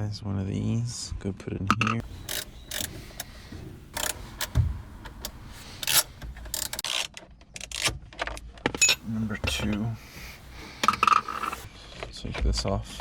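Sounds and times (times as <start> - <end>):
hand ratchet clicking: 2.0 - 7.0, 8.8 - 11.7.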